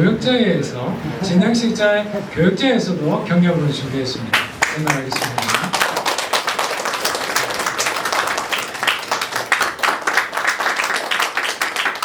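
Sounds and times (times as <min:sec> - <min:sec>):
crowd applauding: 0:04.3 - 0:12.0.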